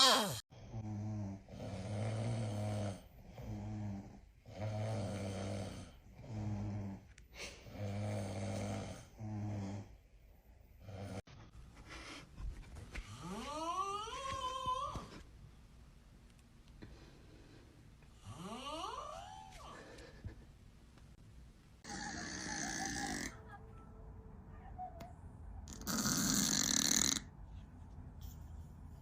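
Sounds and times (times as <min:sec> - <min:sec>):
rhythmic snoring: 0:00.0 - 0:07.1, 0:07.7 - 0:10.0, 0:10.8 - 0:11.2, 0:18.1 - 0:19.6, 0:21.8 - 0:23.4, 0:25.7 - 0:27.3.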